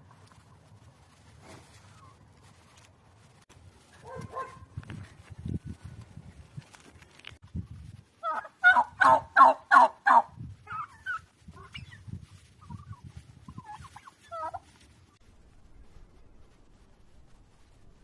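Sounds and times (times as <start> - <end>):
turkey calling: 8.2 - 14.8.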